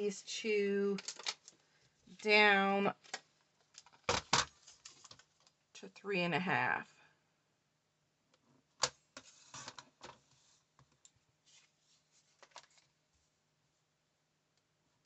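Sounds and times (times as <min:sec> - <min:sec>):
paper rustling: 0:03.7 - 0:05.5, 0:11.4 - 0:13.0.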